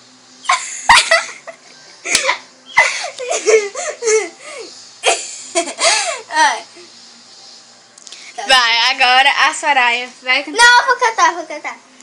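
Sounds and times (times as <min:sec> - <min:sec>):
girls giggling: 0:00.5 - 0:06.2.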